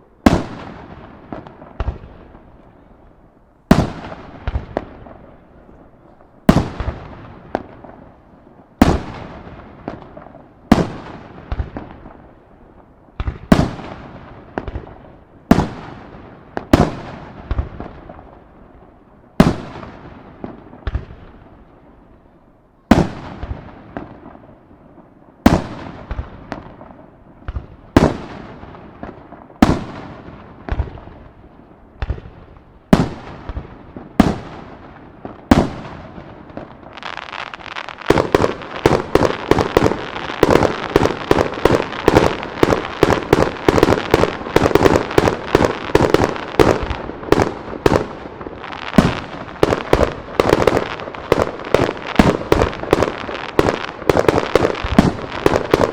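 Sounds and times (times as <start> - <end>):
firework crackles: 22.9 - 55.9.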